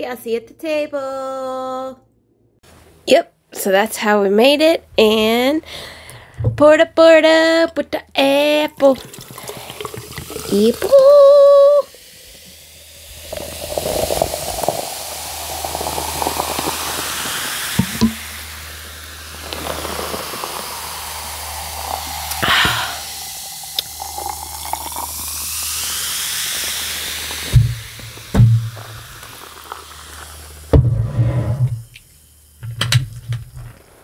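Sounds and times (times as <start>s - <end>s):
liquid pouring into a container: 8.5s - 31.1s.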